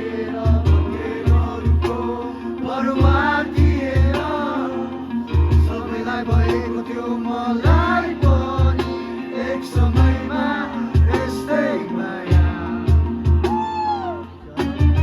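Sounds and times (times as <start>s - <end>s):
bass guitar: 0.0s - 9.2s, 9.8s - 11.6s, 12.3s - 15.0s
guitars: 0.0s - 15.0s
lead guitar bending pitch: 0.0s - 15.0s
drum kit with kick drum: 0.3s - 2.2s, 3.0s - 4.5s, 5.3s - 6.9s, 7.6s - 9.2s, 9.8s - 11.6s, 12.3s - 15.0s.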